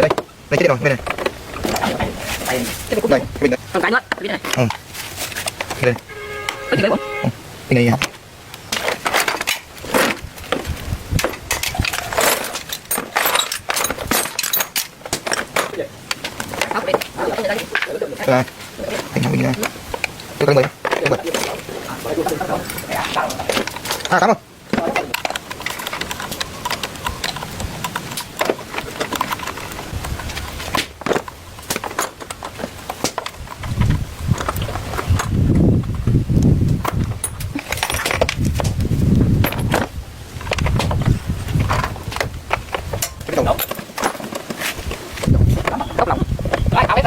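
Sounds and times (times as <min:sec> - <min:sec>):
tools clattering and scraping: 0:08.0 - 0:35.3, 0:36.8 - 0:38.7, 0:39.4 - 0:45.9.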